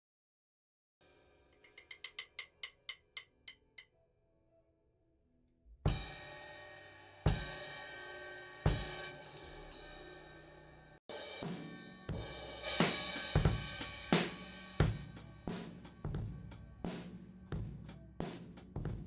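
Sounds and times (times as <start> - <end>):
drum kit pattern: 5.9 - 6.5, 7.3 - 10.0, 11.1 - 19.0
crash cymbal hits with bass drum: 11.1 - 16.3.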